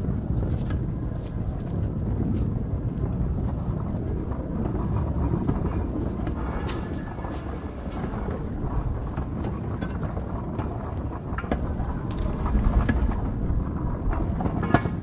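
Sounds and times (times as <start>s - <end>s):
cart wheels rumbling on rails: 0.0s - 15.0s
clicks and clanks: 14.0s - 15.0s.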